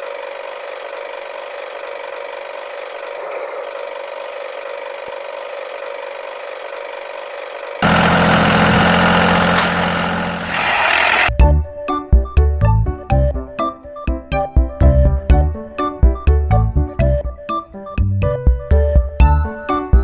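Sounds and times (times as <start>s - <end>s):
loud engine: 7.8s - 11.4s.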